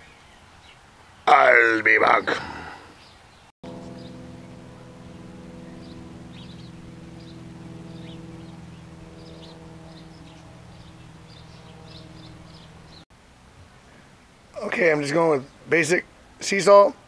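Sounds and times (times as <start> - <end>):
birds chirping: 0.0 - 13.1
low mechanical hum: 3.6 - 13.6.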